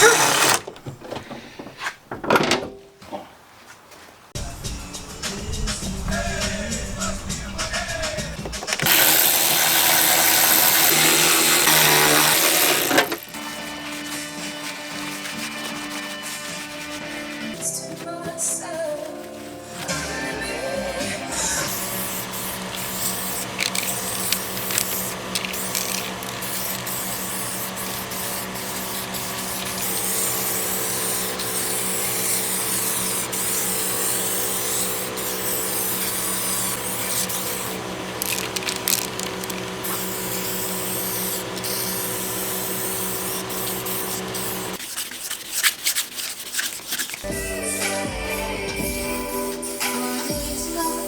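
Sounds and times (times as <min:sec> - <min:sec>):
motor humming: 0:00.0 - 0:00.7, 0:04.4 - 0:17.6, 0:19.4 - 0:44.8
paint spray gun hissing: 0:04.6 - 0:17.8, 0:19.4 - 0:44.8, 0:47.2 - 0:51.0.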